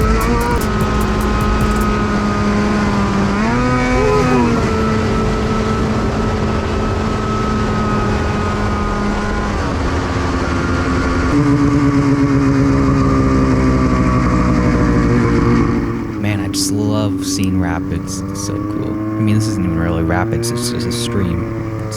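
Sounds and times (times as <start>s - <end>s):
snowmobile engine running: 0.0s - 8.2s, 15.8s - 21.9s
track rumble: 0.0s - 10.2s, 10.8s - 21.9s.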